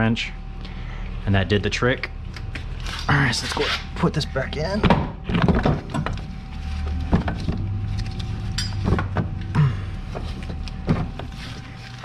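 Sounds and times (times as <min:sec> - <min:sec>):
steady low hum: 0:00.0 - 0:12.0
metal tools knocking and scraping: 0:08.6 - 0:09.0.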